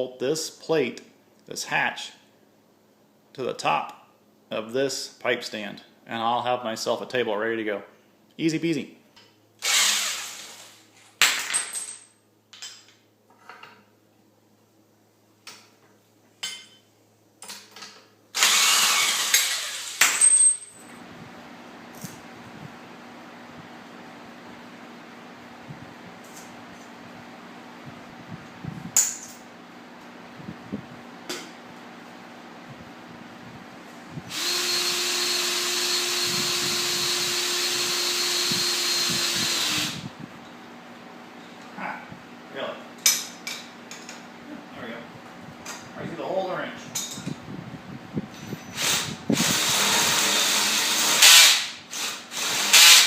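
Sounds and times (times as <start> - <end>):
power tool bursts: 9.6 - 10.8, 18.4 - 20.3, 34.3 - 40.1, 48.7 - 53.0
motor hum: 18.4 - 20.0, 32.7 - 40.4.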